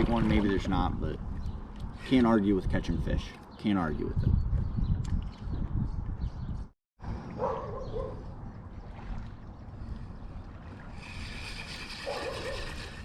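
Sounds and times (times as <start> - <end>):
water around a kayak: 0.0 - 2.0, 7.0 - 13.0
wind noise: 0.0 - 6.7.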